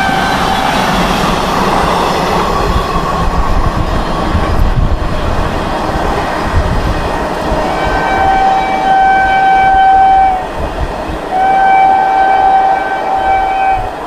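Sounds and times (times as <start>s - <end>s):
moving train rumble: 0.0s - 14.0s
locomotive horn blasts: 7.7s - 10.4s, 11.3s - 14.0s.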